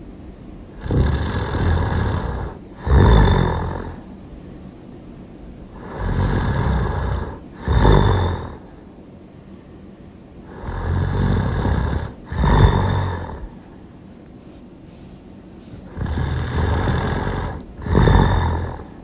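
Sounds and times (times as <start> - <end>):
person snoring loudly: 0.7 - 4.1, 5.7 - 8.8, 10.4 - 13.6, 15.9 - 19.0
quiet breathing: 0.7 - 19.0.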